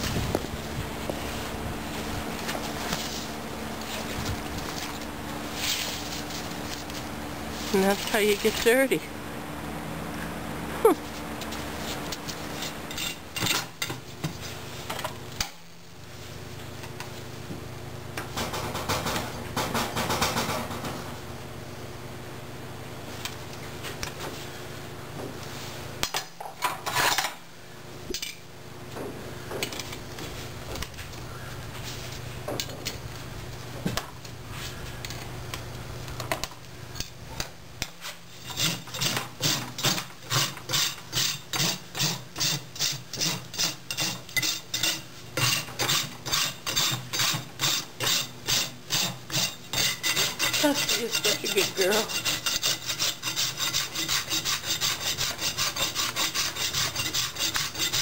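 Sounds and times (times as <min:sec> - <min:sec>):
rasp filing hoof: 0:38.4 - 0:58.0.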